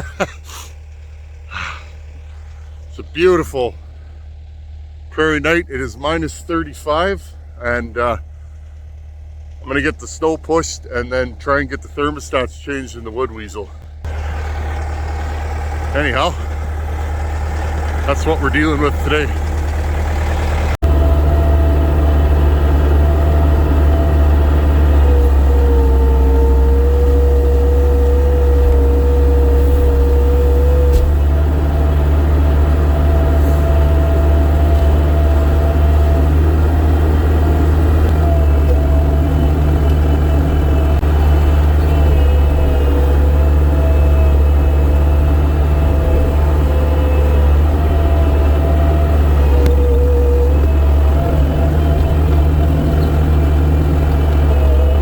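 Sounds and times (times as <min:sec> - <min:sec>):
vehicle engine rumbling: 0:00.0 - 0:55.0.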